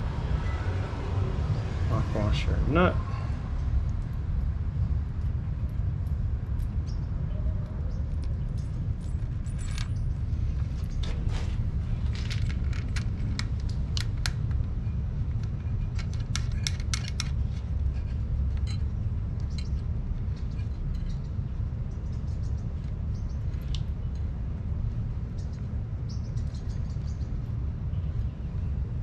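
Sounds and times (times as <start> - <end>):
steady low hum: 0.0 - 29.0
small metal hardware clinking: 8.1 - 11.2, 15.4 - 21.3.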